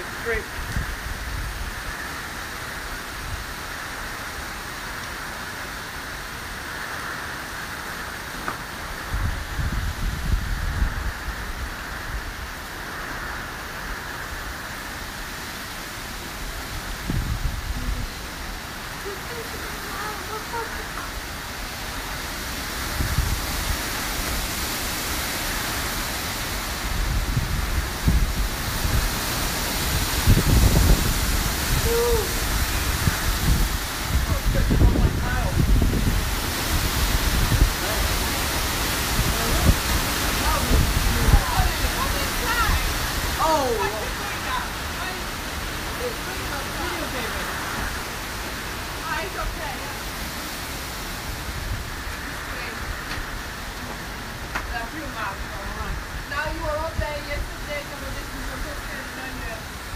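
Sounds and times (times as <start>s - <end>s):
gusts buffeting microphone: 0.0s - 59.9s
heavy rain hiss: 0.0s - 59.9s.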